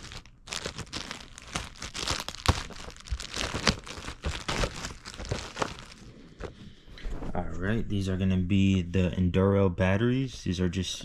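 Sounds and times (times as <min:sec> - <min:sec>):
packaging crinkling and crackling: 0:00.0 - 0:06.6.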